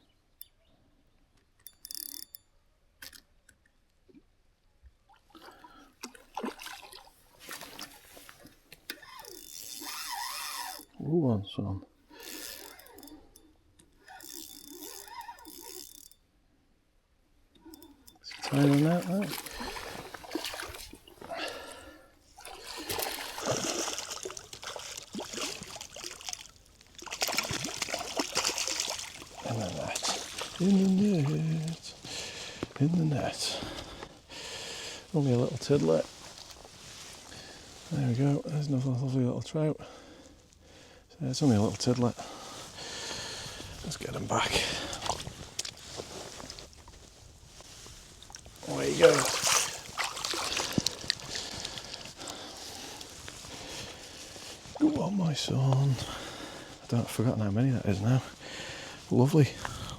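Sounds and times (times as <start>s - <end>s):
fishing reel clicking: 1.6s - 3.2s, 8.9s - 11.0s, 12.2s - 16.3s
water splashing and trickling: 5.1s - 11.0s, 17.7s - 34.0s, 41.4s - 56.6s.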